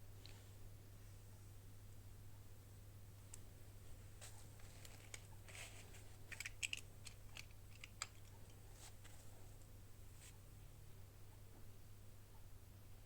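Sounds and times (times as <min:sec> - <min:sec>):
plastic packaging clicks and crinkles: 0:04.2 - 0:09.2.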